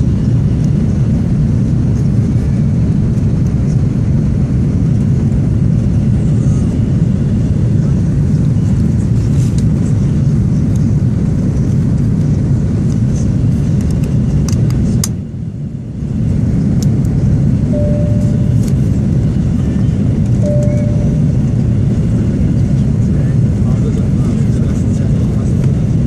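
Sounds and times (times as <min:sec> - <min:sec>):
airliner cabin engine rumble: 0:00.0 - 0:26.0
short steady tones: 0:17.7 - 0:18.6, 0:20.4 - 0:21.4.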